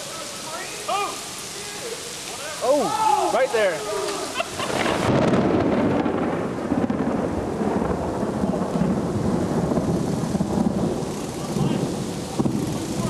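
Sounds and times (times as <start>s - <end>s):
steady rain: 0.0s - 13.0s
thunder rumbling: 3.8s - 13.0s.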